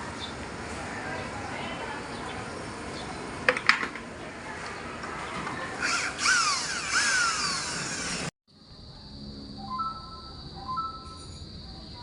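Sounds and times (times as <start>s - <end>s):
power tool whining: 5.8s - 8.3s
steady high tone: 8.8s - 11.5s.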